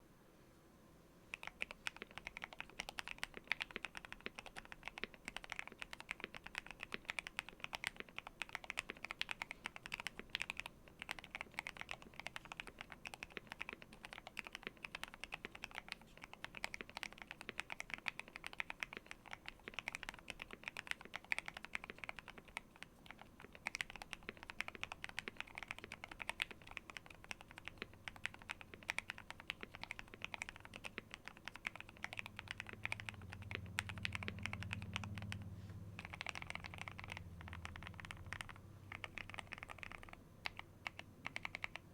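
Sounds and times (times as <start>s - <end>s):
fast mechanical keyboard typing: 1.3s - 41.9s.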